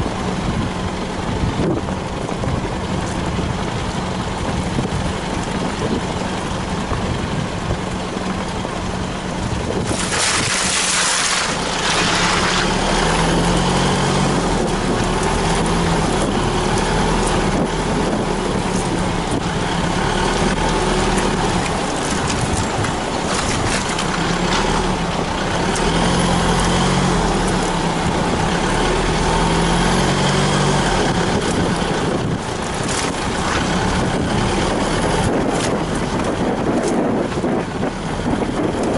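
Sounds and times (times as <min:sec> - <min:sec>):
off-road vehicle engine revving: 0:00.0 - 0:38.9
loud rush of noise: 0:08.8 - 0:16.7.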